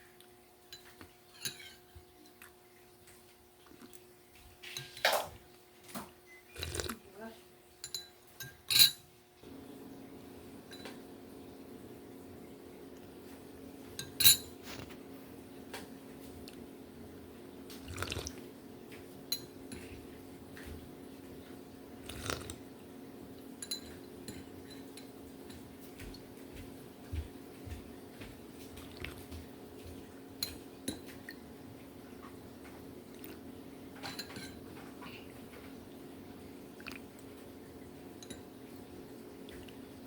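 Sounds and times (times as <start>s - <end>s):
spoon clinking on glass and dishes: 0.7s - 2.4s, 7.8s - 9.1s, 14.0s - 14.6s, 19.3s - 20.0s, 23.6s - 25.8s, 30.4s - 31.1s, 34.0s - 34.6s, 38.2s - 38.5s.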